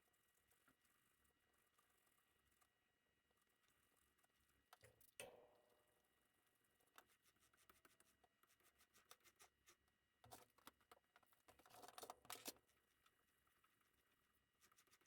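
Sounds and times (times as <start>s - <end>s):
soft rustling and scraping: 0.0s - 4.7s.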